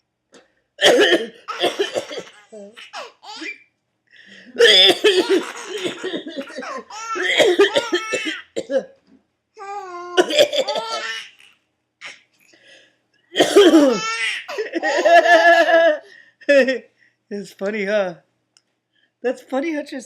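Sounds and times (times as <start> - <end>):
man coughing: 0.8 - 2.4, 4.5 - 9.0, 10.2 - 11.1, 13.4 - 14.8
baby laughing: 1.5 - 3.7, 4.6 - 8.6, 9.6 - 12.3, 13.7 - 16.8.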